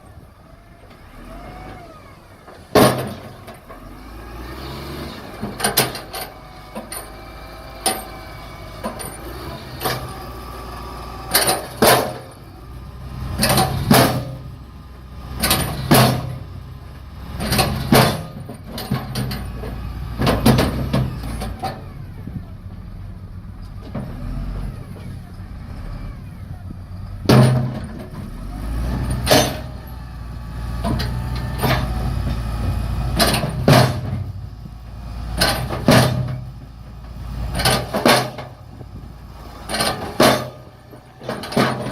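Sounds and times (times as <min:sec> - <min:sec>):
diesel engines running: 0:00.0 - 0:41.9
loud sharp knocks: 0:33.2 - 0:34.3.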